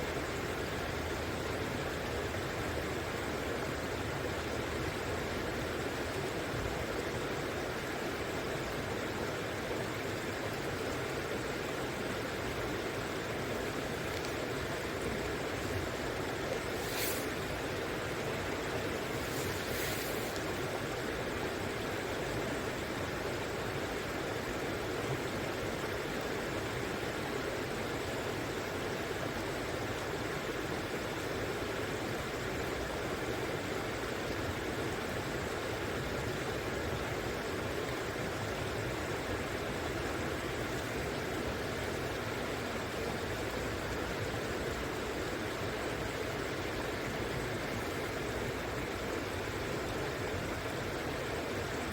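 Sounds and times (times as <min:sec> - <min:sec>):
river water rushing: 0:08.8 - 0:23.0.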